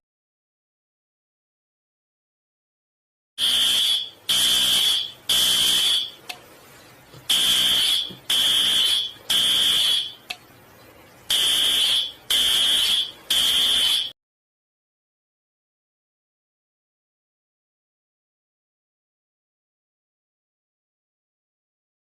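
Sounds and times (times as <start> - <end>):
fire alarm beeping: 3.4 - 6.2, 7.3 - 10.3, 11.3 - 14.2.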